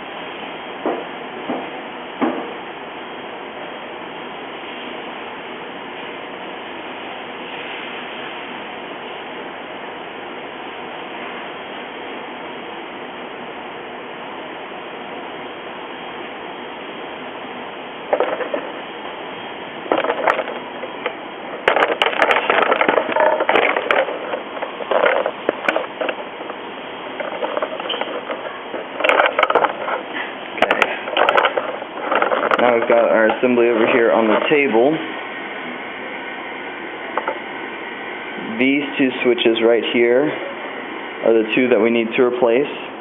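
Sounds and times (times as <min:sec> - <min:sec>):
parts handled on a table: 0:18.1 - 0:18.8, 0:19.9 - 0:34.6, 0:37.2 - 0:37.4.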